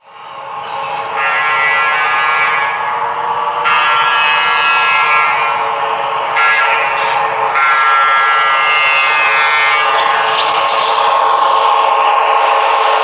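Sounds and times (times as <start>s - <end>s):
model locomotive running: 0.0s - 13.0s
model train horn blasts: 0.9s - 10.3s.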